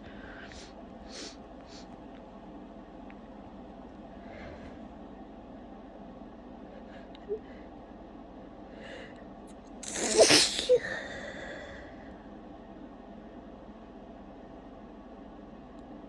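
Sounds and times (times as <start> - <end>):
woman sneezing: 9.8 - 11.0
breathy intake: 9.8 - 11.9.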